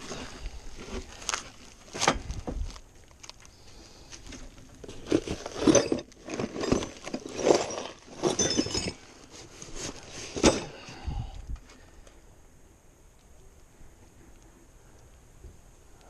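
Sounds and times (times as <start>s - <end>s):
steel parts clanking: 5.2s - 9.1s.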